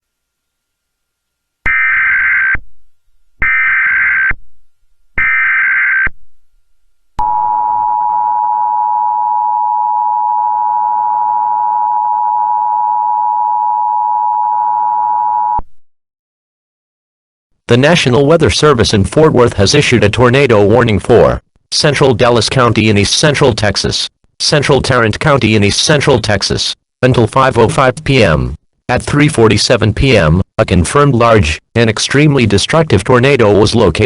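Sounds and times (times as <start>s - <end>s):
two-tone attention signal: 7.2s - 15.6s.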